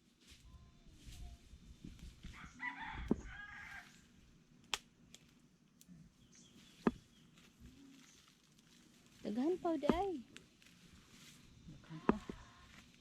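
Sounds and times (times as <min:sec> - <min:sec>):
rooster crowing: 0:02.3 - 0:04.0.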